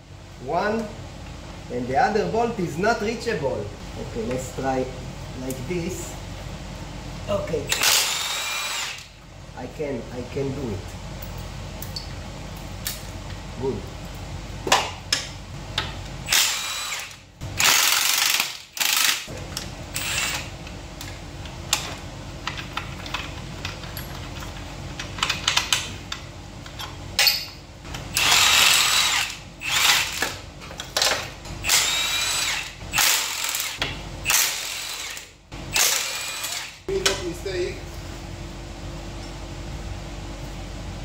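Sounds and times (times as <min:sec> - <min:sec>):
power drill motor whine: 0:07.7 - 0:09.1, 0:16.3 - 0:19.2, 0:20.0 - 0:20.5, 0:28.1 - 0:30.2, 0:31.6 - 0:36.8.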